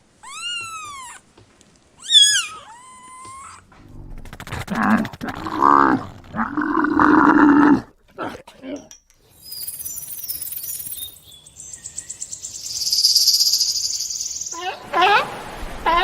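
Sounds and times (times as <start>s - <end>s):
high-pitched animal calls: 0.1s - 1.2s, 2.0s - 3.7s
rough growling call: 3.2s - 8.0s.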